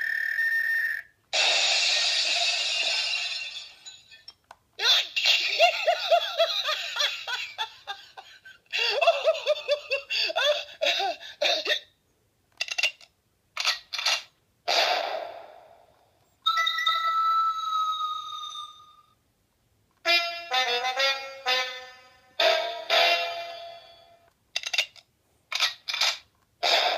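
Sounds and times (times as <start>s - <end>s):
chirpy syllables: 0.0s - 1.2s
burst of noise: 1.4s - 3.5s.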